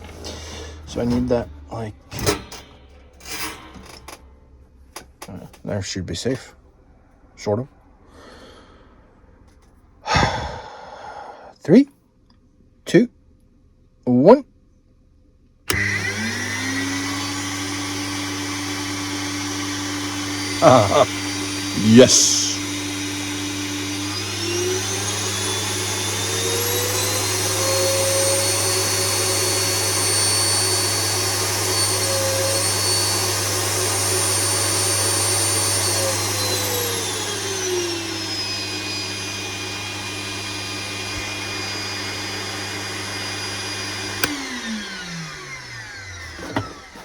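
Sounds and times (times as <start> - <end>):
vacuum motor whining: 0.0 - 4.2, 15.7 - 47.0
switch click: 44.2 - 44.4.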